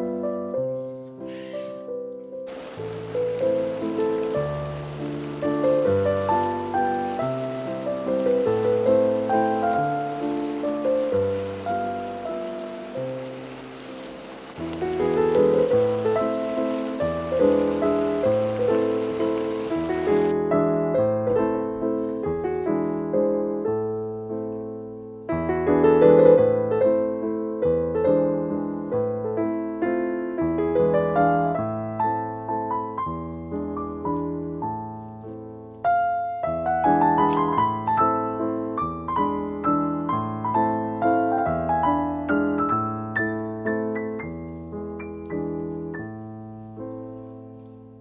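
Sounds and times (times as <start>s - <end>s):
sizzling hiss: 0.0s - 1.9s, 2.5s - 20.4s
piano music: 0.0s - 48.0s.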